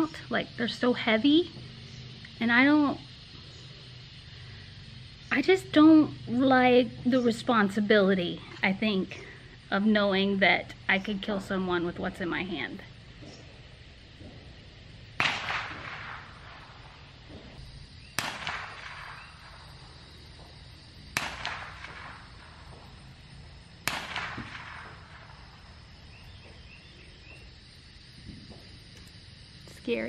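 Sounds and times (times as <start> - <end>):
gunshots with echo: 15.2 - 16.6, 18.2 - 19.6, 21.1 - 22.6, 23.8 - 25.4.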